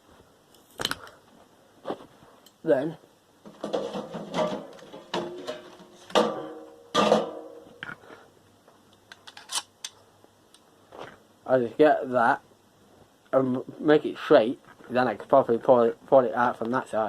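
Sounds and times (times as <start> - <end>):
metal clattering and knocking: 3.5 - 7.7
sharp ringing metal knocks: 6.1 - 7.7.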